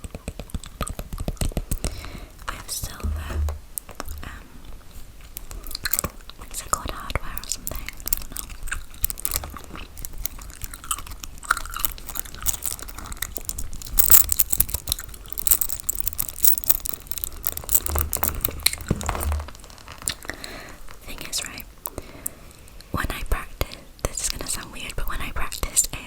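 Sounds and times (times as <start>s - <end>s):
low thumps: 2.9s - 4.4s, 15.4s - 19.7s
gum chewing: 5.3s - 20.7s.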